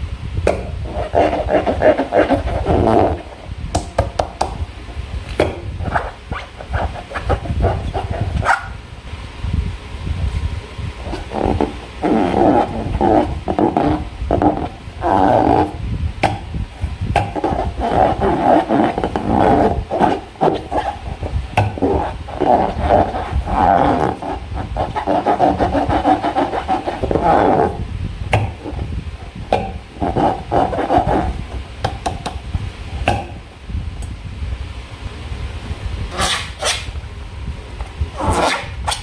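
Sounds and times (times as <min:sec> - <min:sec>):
rubbery squeaks and groans: 0:00.8 - 0:03.4, 0:05.8 - 0:08.8, 0:11.0 - 0:15.8, 0:17.2 - 0:27.8, 0:29.6 - 0:31.6, 0:36.1 - 0:36.9, 0:38.2 - 0:39.0.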